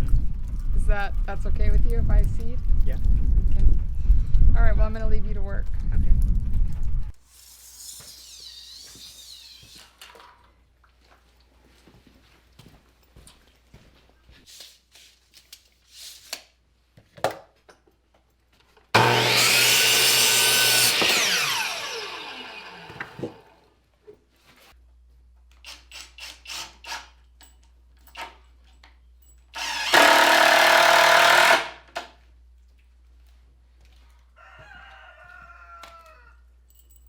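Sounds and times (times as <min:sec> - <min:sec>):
electric power saw cutting wood: 0:07.6 - 0:09.9, 0:19.0 - 0:23.6, 0:29.6 - 0:32.1.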